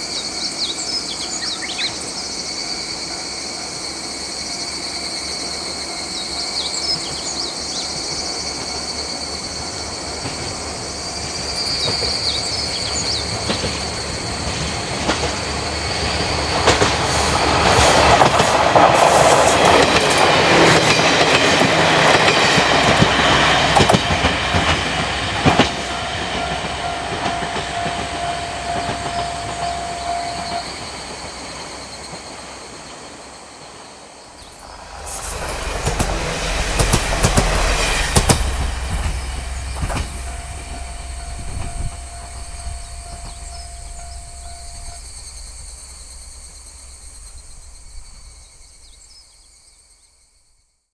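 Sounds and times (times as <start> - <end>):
diesel railcar engine: 0.0 - 49.0
wheels clacking over rail joints: 8.6 - 33.8.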